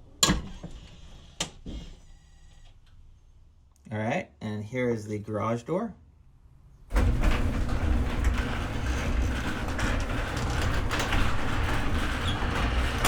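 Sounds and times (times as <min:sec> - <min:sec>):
garage door rumbling: 0:06.6 - 0:13.0
clicks and rattles: 0:06.9 - 0:13.0.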